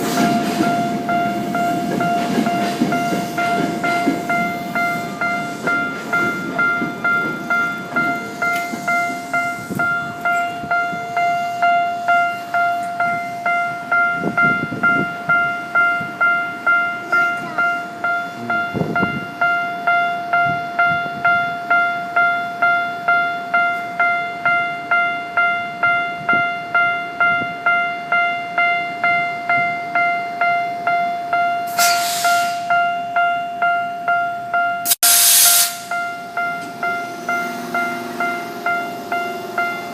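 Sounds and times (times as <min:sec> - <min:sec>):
level-crossing alarm bell dinging: 0:00.0 - 0:39.9
short hiss: 0:35.0 - 0:35.9.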